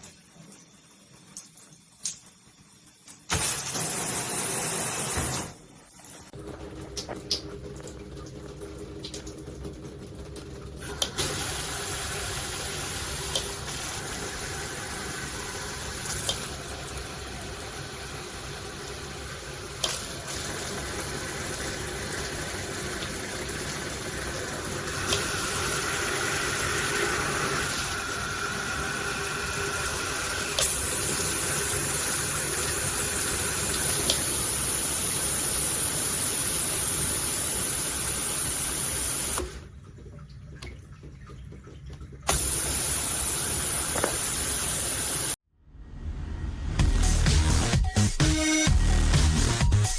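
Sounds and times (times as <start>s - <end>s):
shower head spraying water: 10.8s - 39.5s, 42.3s - 45.4s.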